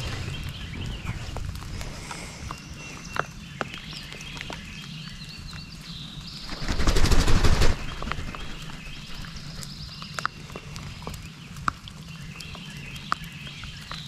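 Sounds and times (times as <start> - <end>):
songbirds singing and chirping: 0.0 - 14.0
rustling fluttering burst: 6.4 - 9.7.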